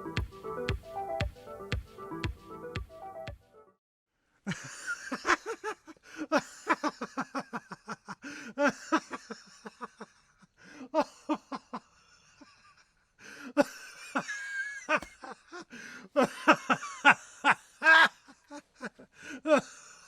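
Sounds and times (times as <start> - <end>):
man laughing: 4.5 - 12.9, 13.6 - 19.7.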